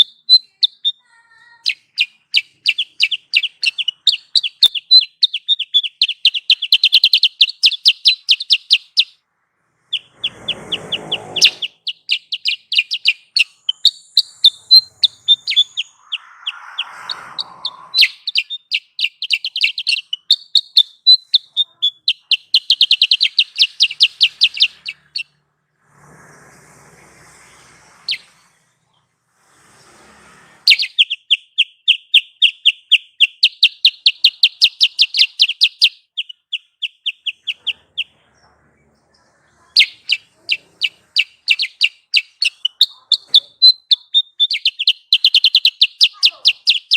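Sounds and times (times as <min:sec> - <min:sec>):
rapid high bird chirps: 0:00.0 - 0:46.9
hiss: 0:25.8 - 0:30.9.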